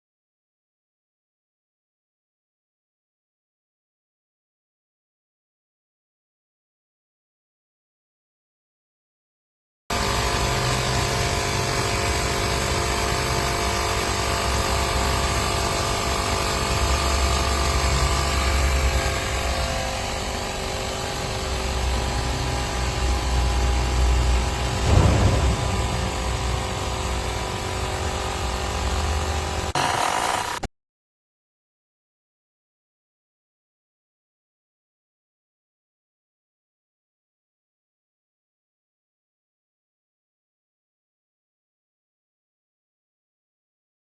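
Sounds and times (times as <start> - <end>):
small compressor buzzing: 9.9 - 30.7
brief knock: 24.8 - 27.0.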